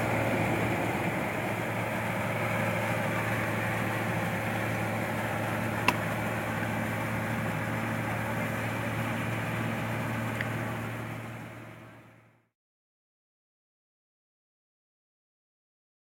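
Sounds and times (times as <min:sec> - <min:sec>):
combine harvester engine humming: 0:00.0 - 0:12.4.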